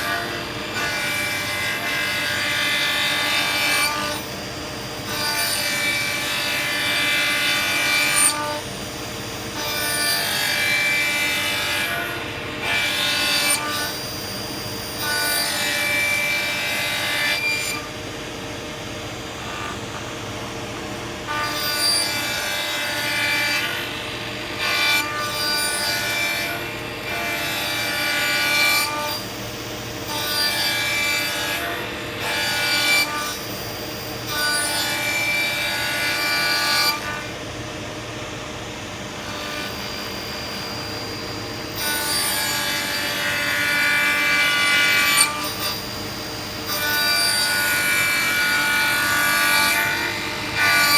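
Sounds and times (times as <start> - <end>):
saw cutting workpiece: 0.0 - 18.0, 18.8 - 29.4, 39.2 - 50.9.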